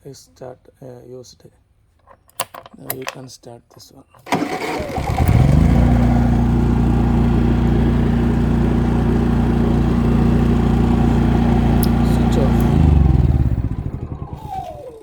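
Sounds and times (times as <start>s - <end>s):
generator engine starting up: 4.2s - 15.0s.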